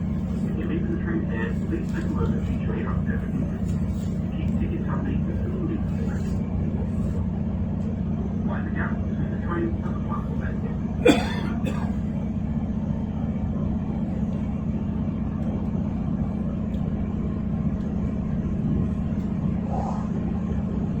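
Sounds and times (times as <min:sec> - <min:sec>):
train rumble inside carriage: 0:00.0 - 0:21.0
man coughing: 0:11.0 - 0:12.1.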